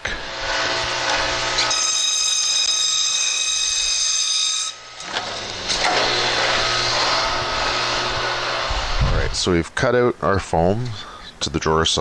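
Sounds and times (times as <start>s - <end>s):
noisy hiss: 0.0s - 1.7s, 4.7s - 12.0s
power tool motor whining: 0.0s - 9.1s.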